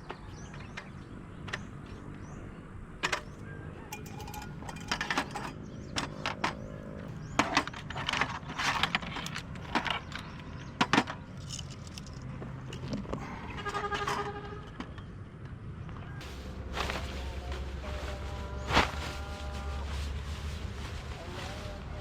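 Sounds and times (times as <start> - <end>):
objects being handled: 16.2 - 22.0.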